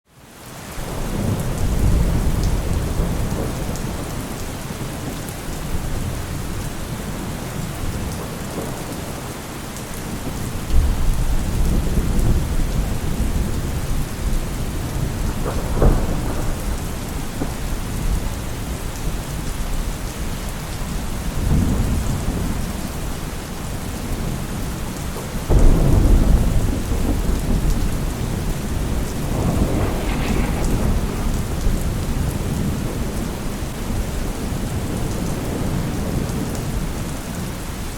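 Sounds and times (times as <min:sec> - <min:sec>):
heavy rain pouring: 0:00.2 - 0:37.9
thunder rumbling: 0:10.1 - 0:19.4, 0:20.9 - 0:37.0
thunder crack: 0:14.8 - 0:18.2, 0:25.5 - 0:35.7.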